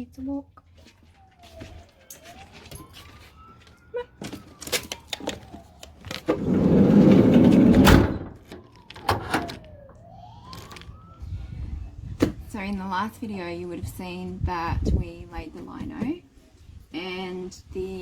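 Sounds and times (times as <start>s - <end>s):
sliding van door slamming shut: 6.3s - 8.5s.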